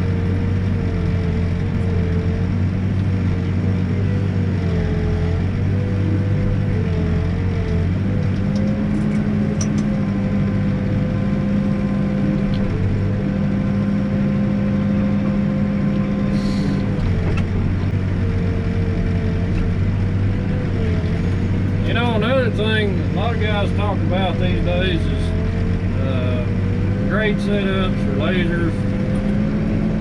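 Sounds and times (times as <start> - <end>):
backhoe engine and hydraulics: 0.0 - 30.0
hydraulic whine: 15.9 - 29.8.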